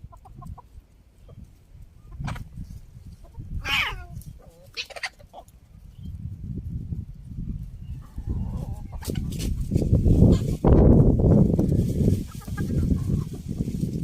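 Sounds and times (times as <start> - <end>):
hen clucking: 0.0 - 5.9, 7.8 - 10.9, 11.6 - 13.8
hen squawking call: 3.6 - 5.2.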